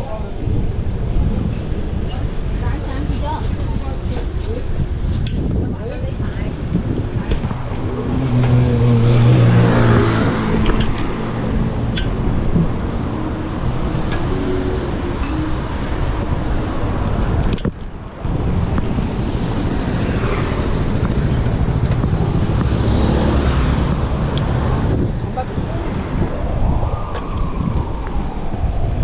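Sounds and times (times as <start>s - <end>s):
traffic and road noise: 0.0s - 29.0s
vehicle engine close by: 6.4s - 29.0s.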